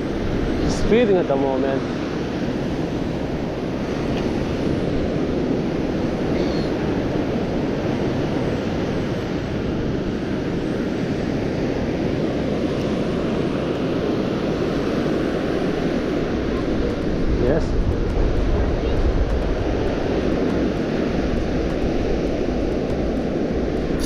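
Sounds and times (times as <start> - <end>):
wind buffeting microphone: 0.0 - 24.0.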